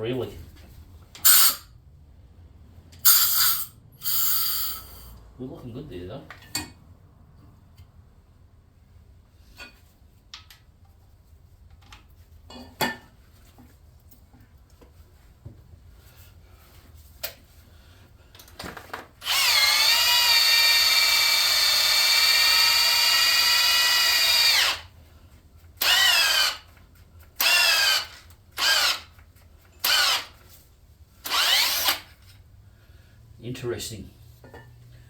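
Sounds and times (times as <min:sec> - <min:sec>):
cordless drill whining: 0:01.2 - 0:01.6, 0:03.1 - 0:05.1, 0:19.2 - 0:24.9, 0:25.8 - 0:26.7, 0:27.4 - 0:29.2, 0:29.8 - 0:30.4, 0:31.2 - 0:32.2.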